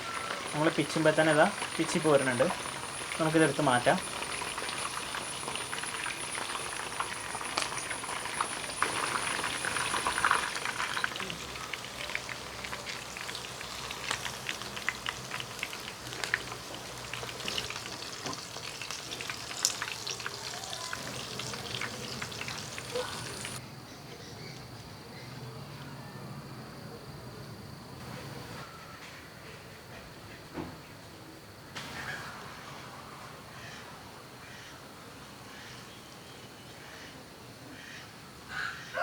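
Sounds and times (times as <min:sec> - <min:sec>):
chicken frying in hot oil: 0:00.0 - 0:23.6.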